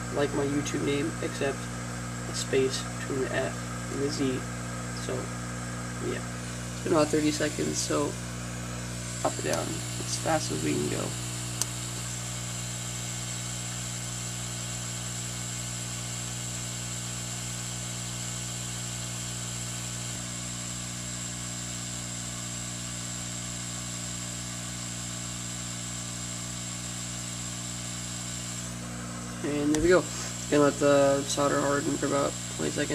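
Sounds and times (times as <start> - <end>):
high whine: 0.0 - 13.3, 26.8 - 32.9
hot-air blower whir: 0.0 - 32.9.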